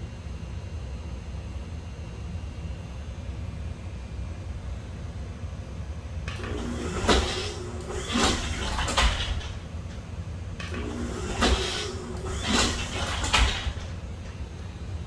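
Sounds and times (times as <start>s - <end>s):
garage door opener motor hum: 6.2s - 15.0s
sharp clunks: 6.3s - 14.7s.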